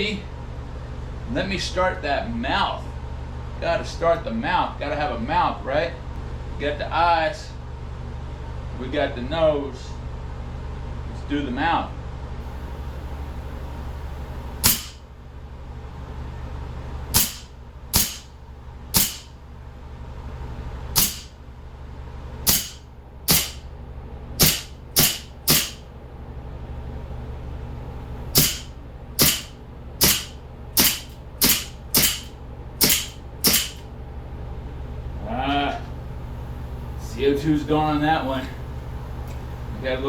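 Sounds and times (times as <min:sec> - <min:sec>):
air pistol shots: 0:14.6 - 0:15.1, 0:17.1 - 0:19.4, 0:21.0 - 0:21.4, 0:22.4 - 0:23.7, 0:24.4 - 0:25.9, 0:28.3 - 0:33.9.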